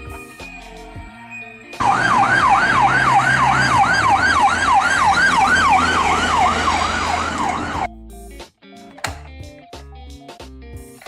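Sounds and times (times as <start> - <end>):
ambulance siren fast yelp: 1.8 - 7.9.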